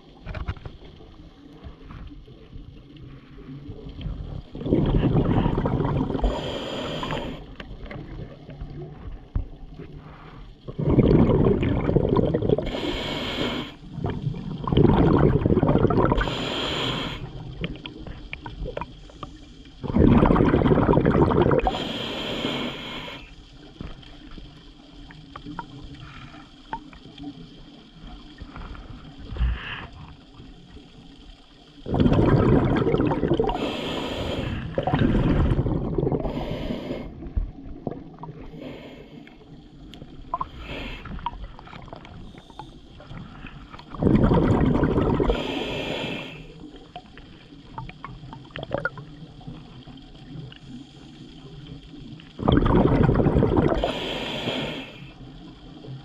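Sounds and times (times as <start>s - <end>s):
exhaled bubbles: 0.0s - 56.0s
faint underwater noise: 0.0s - 56.0s
scuba diver breathing through regulator: 4.6s - 7.7s, 9.9s - 13.9s, 14.8s - 17.6s, 19.9s - 23.4s, 28.5s - 30.2s, 31.9s - 37.3s, 38.4s - 39.5s, 40.4s - 46.7s, 53.4s - 55.2s.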